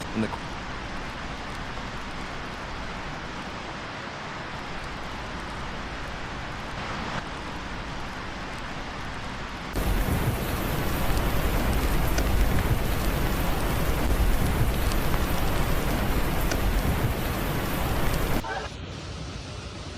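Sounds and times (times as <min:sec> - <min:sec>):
heavy rain hissing: 0:00.0 - 0:19.9
deep rumble: 0:09.6 - 0:19.9.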